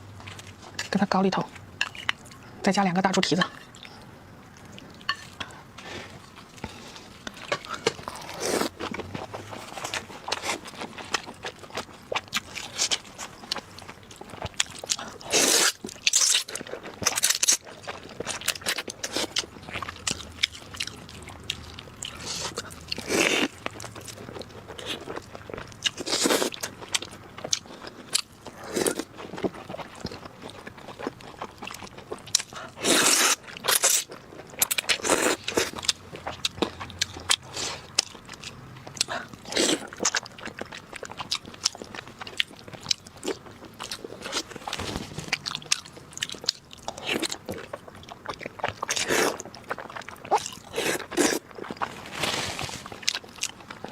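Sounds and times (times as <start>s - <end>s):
person biting and chewing: 30.9s - 52.0s.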